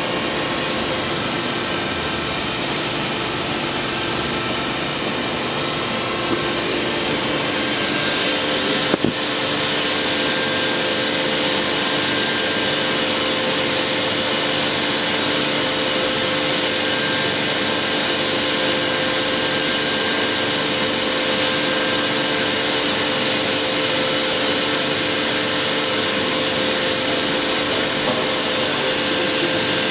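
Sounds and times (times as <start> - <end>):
constant hum tones: 0.0 - 10.0.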